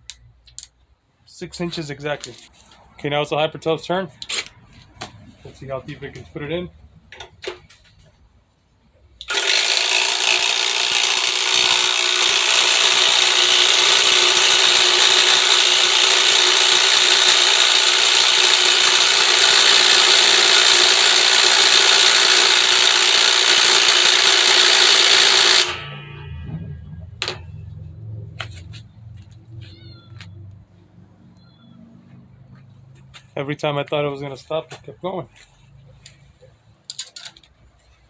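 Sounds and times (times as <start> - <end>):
impact driver hammering bolt: 9.3 - 25.9.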